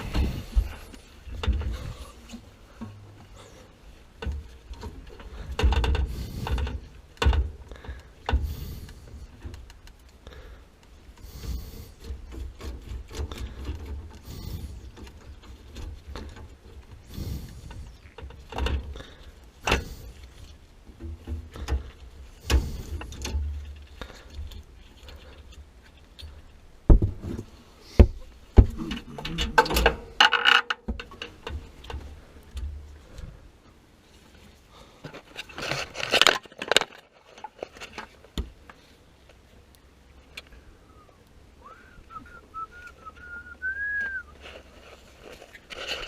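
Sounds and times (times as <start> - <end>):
knocks and clanks on pipes: 4.2 - 8.8.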